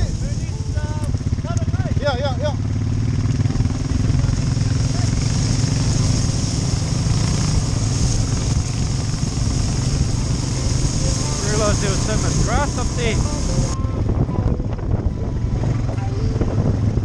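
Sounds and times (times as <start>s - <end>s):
engine running steadily: 0.0s - 17.0s
steady hiss: 4.8s - 13.8s.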